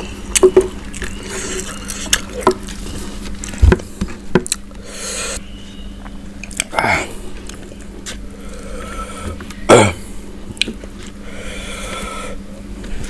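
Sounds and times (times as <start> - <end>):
wet chewing clicks: 0.3 - 3.6.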